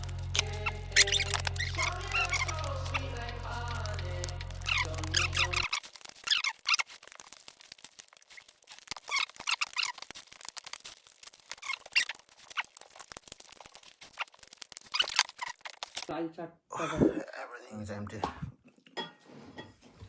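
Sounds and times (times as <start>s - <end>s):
squeaky sucking noises: 0.0s - 7.1s, 8.2s - 16.1s
wet mouth clicks and lip smacks: 0.2s - 16.1s.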